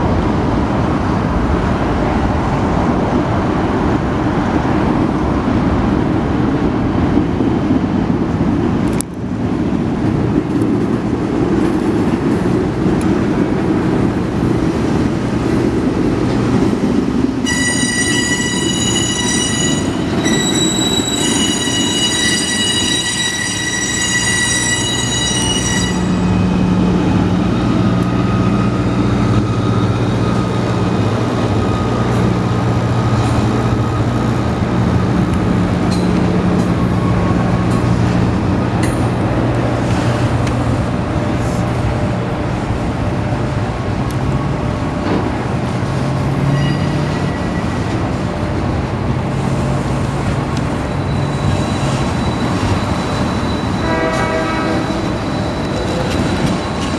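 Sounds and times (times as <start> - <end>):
freight train rumbling past: 0.0 - 56.9
high-pitched wheel squeal: 17.4 - 26.4, 46.4 - 47.8, 50.8 - 56.9.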